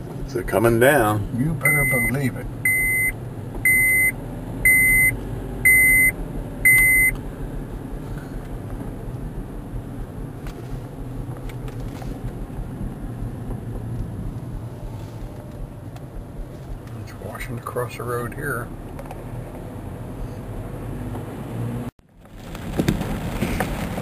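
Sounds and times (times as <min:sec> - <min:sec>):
steady low rumble: 0:00.0 - 0:20.9
high electronic beep: 0:01.6 - 0:07.1.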